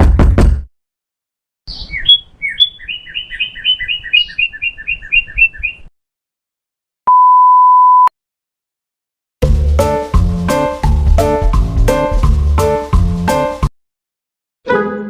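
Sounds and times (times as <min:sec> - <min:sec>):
bird chirping: 0:01.7 - 0:05.9.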